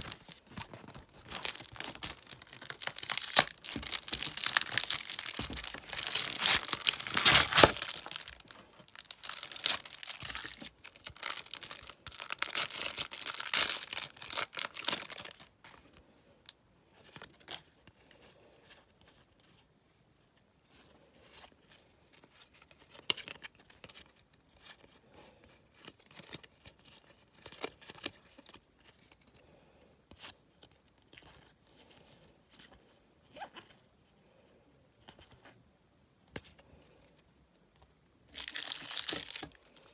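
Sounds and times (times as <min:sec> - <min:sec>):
wrapper tearing and crinkling: 0:00.0 - 0:15.5, 0:38.3 - 0:39.9.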